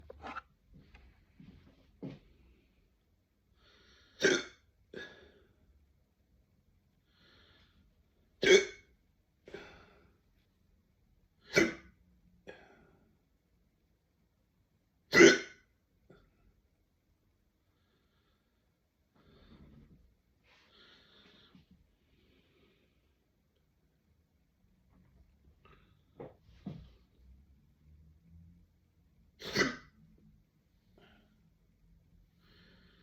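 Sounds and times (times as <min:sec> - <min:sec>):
person hiccupping: 0:08.4 - 0:08.9, 0:29.4 - 0:30.0.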